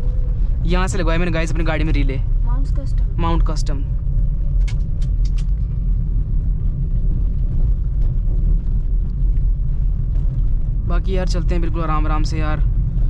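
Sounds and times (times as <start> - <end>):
car engine and road rumble: 0.0 - 13.0.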